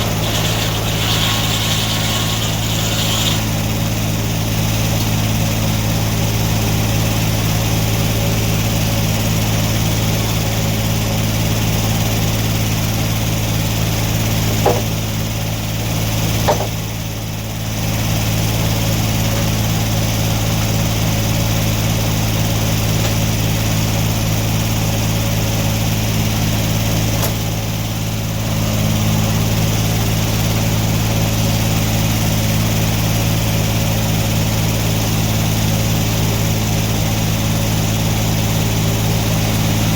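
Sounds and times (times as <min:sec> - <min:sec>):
saw blade spinning: 0:00.0 - 0:05.2
sawmill engine humming: 0:00.0 - 0:39.9
sharp knocks: 0:14.6 - 0:15.0, 0:16.4 - 0:16.8.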